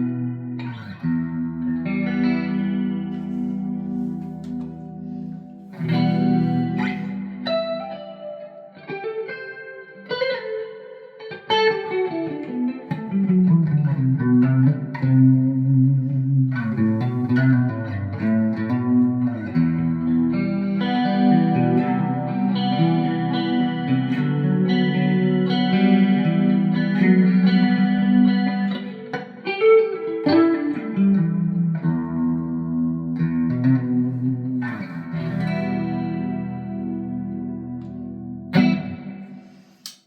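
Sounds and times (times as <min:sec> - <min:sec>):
clean electric guitar with delay: 0:00.0 - 0:39.8.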